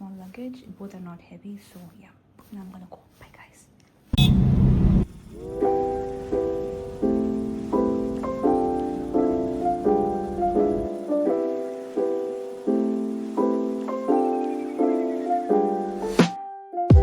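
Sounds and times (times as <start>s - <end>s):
soft piano chords: 5.0s - 17.0s.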